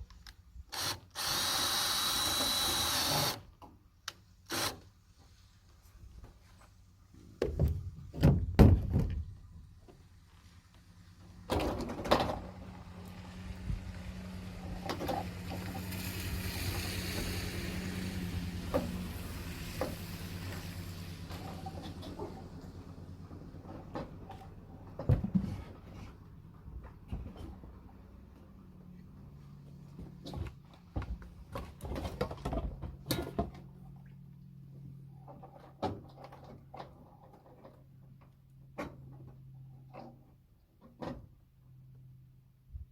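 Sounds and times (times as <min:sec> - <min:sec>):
sharp knocks and clunks: 0:07.4 - 0:09.4, 0:24.9 - 0:26.1.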